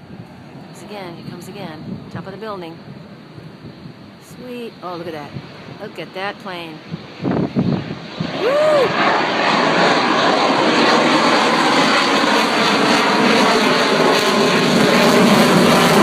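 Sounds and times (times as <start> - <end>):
jet flying past: 0.0 - 16.0
person shouting: 8.4 - 9.0.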